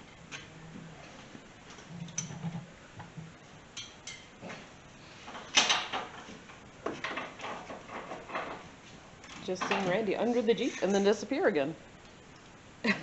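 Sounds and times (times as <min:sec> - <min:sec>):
metal parts knocking and clanking: 0:07.0 - 0:08.6, 0:09.3 - 0:10.0.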